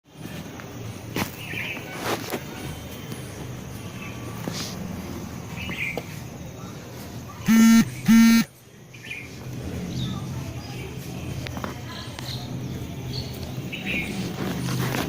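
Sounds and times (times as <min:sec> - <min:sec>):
faint outdoor background: 0:00.0 - 0:15.0
horn honks: 0:07.5 - 0:08.5.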